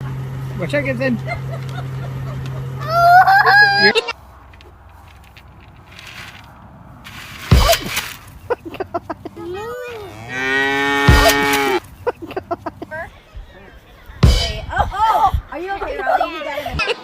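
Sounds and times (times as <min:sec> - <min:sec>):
loud thump: 0:07.5 - 0:08.2, 0:14.2 - 0:15.0
cattle mooing: 0:09.6 - 0:11.8.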